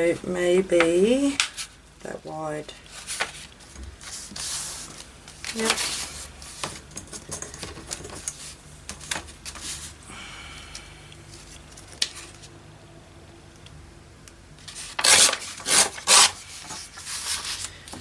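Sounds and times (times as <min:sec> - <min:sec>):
paper rustling: 0:02.9 - 0:10.0, 0:14.7 - 0:18.0
paper tearing or creasing: 0:14.7 - 0:17.8.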